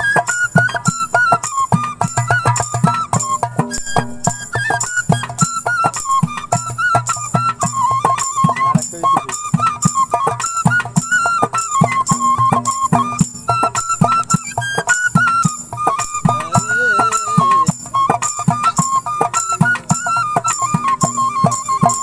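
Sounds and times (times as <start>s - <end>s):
bamboo flute melody: 0.0s - 22.0s
steady beat: 0.2s - 22.0s.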